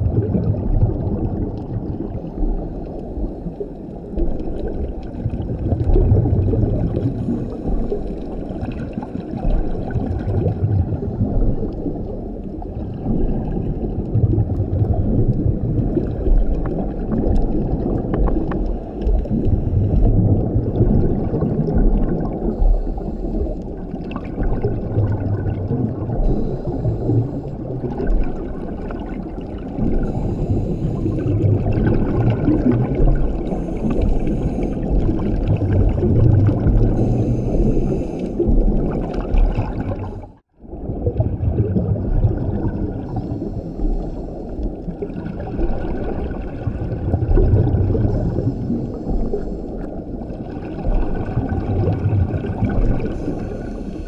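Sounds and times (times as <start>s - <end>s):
exhaled bubbles underwater: 0.0s - 54.0s
underwater regulator breathing: 18.4s - 20.5s, 21.9s - 24.1s, 25.9s - 28.5s, 29.6s - 40.4s, 43.0s - 45.0s, 47.6s - 51.3s, 52.4s - 54.0s.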